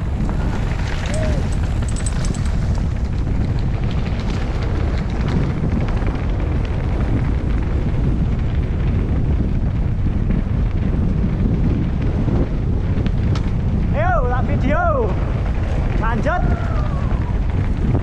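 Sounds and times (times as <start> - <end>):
faint ticks and rattles: 0.0 - 13.9
wind buffeting microphone: 0.0 - 18.0.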